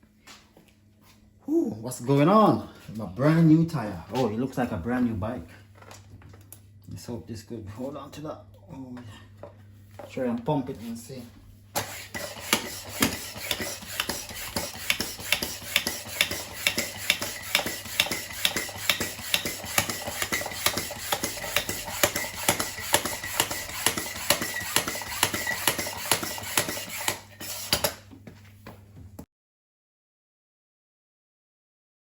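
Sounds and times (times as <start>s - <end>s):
bicycle pump clacking: 11.8s - 28.0s.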